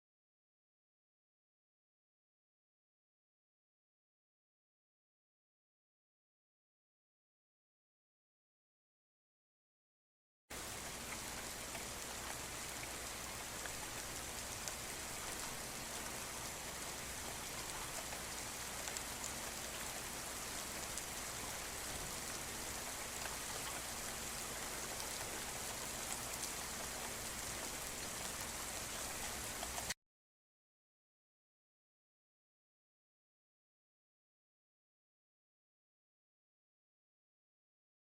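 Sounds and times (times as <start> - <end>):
steady rain falling: 10.5 - 30.0.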